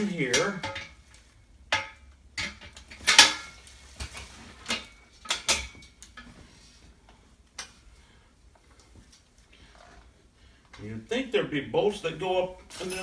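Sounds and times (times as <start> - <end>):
metal rack parts clanking: 0.0 - 6.4, 12.7 - 13.0.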